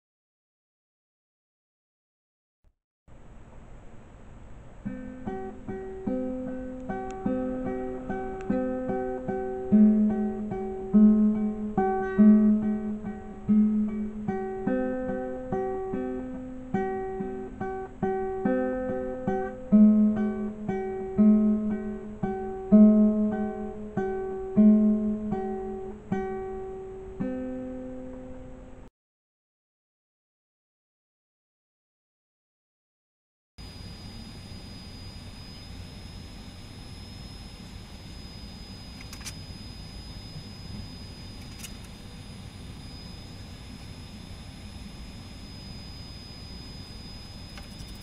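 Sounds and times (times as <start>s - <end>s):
acoustic guitar picking chords: 4.8s - 28.9s.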